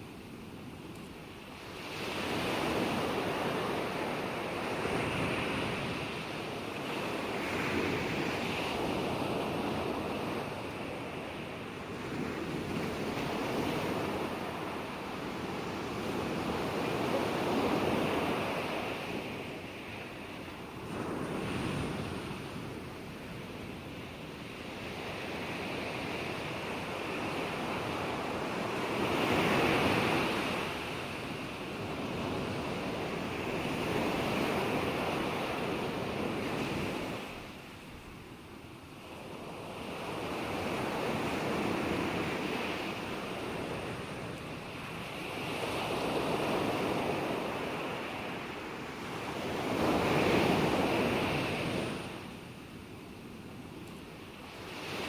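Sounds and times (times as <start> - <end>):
ocean waves breaking: 1.4 - 38.0.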